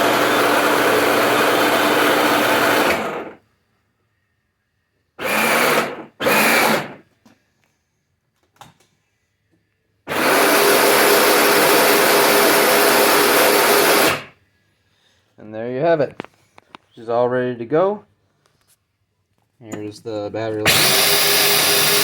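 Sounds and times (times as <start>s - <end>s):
electric motor and gearbox whirring: 20.6s - 22.0s.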